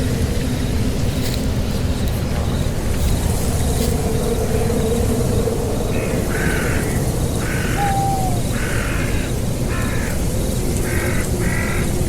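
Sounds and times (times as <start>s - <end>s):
animal harsh call: 7.4s - 9.2s.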